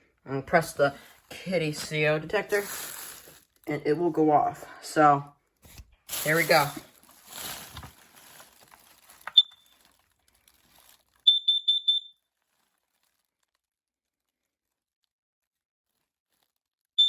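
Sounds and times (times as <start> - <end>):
high-pitched alarm beeps: 11.3 - 12.1.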